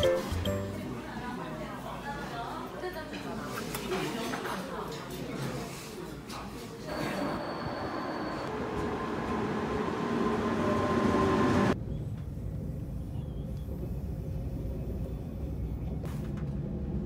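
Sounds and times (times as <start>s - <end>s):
train whine: 6.9s - 11.8s
train rumble: 6.9s - 12.9s.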